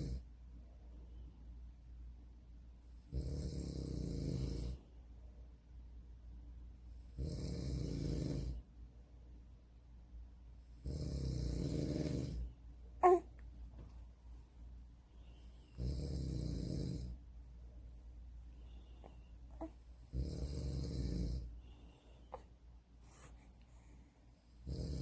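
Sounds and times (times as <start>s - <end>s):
man snoring: 3.1s - 4.8s, 7.2s - 8.6s, 10.8s - 13.2s, 15.8s - 17.2s, 20.1s - 21.5s, 24.6s - 25.0s.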